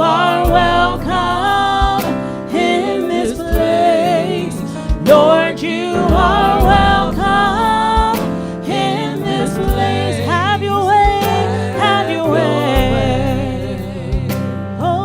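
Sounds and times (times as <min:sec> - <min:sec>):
gospel singers: 0:00.0 - 0:15.0
drum beats: 0:06.0 - 0:08.5
band accompaniment: 0:06.0 - 0:08.9.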